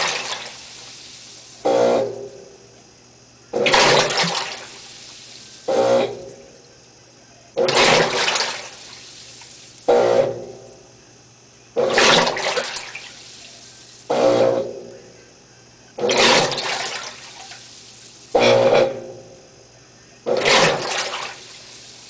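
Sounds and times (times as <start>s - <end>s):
washing machine water sloshing: 0.0s - 2.4s, 3.6s - 7.0s, 7.6s - 10.8s, 11.8s - 14.8s, 16.0s - 19.4s, 20.3s - 22.0s
faint steady hum: 0.0s - 22.0s.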